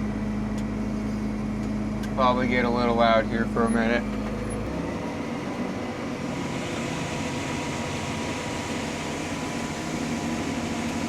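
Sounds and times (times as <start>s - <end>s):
tractor engine at high throttle: 0.0s - 11.0s
grain auger running: 6.2s - 11.0s.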